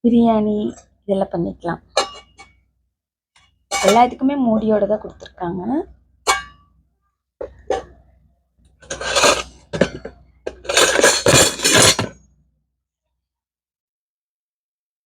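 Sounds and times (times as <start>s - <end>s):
metal pots and lids clinking: 1.9s - 2.6s, 3.4s - 4.2s, 6.3s - 6.7s, 7.4s - 8.0s, 8.8s - 12.2s.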